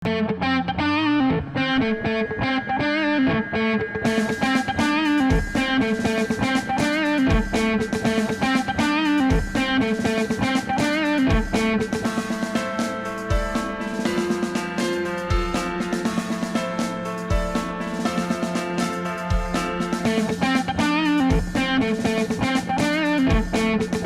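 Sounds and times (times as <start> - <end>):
electric guitar melody with effects: 0.0 - 24.0
drums: 4.0 - 24.0
deep kick drum: 5.3 - 6.0, 7.3 - 8.1, 9.3 - 9.8, 11.3 - 12.0, 19.3 - 20.2, 21.3 - 21.8, 23.3 - 24.0.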